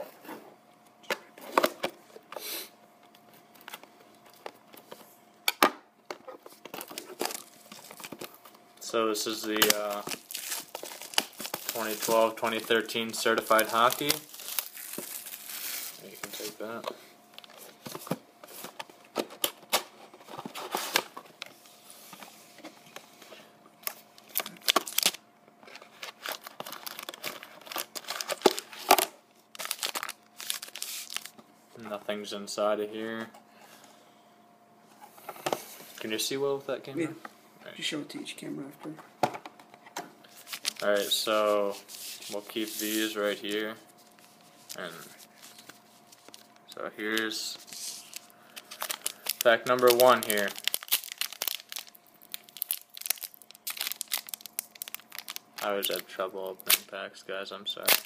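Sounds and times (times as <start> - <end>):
packaging crinkling and rustling: 6.3 - 22.7, 23.8 - 31.5, 40.2 - 56.8, 57.8 - 58.0.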